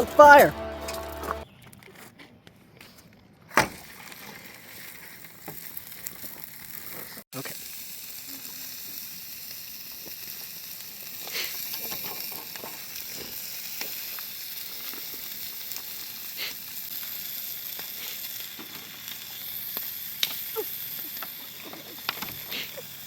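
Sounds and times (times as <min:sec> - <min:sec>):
campfire hissing: 0:00.0 - 0:01.4, 0:03.8 - 0:23.0
fire crackling pops: 0:03.5 - 0:23.0.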